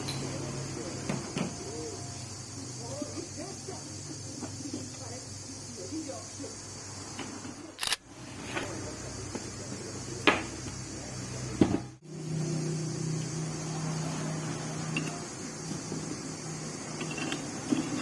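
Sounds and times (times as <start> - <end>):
electric fan motor humming: 10.0 - 18.0.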